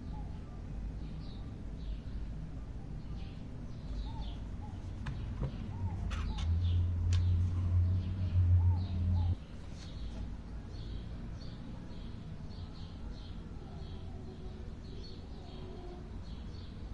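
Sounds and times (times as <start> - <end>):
loud low hum: 0.0 - 9.4
birds chirping: 0.0 - 16.9.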